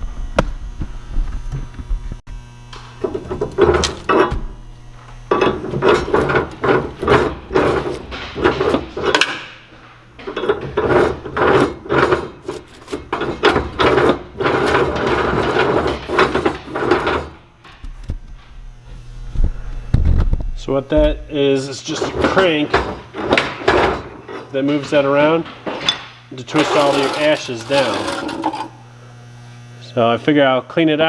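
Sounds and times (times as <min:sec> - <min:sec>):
grate scraping through ashes: 0:05.3 - 0:09.2, 0:10.2 - 0:17.4, 0:26.3 - 0:28.8.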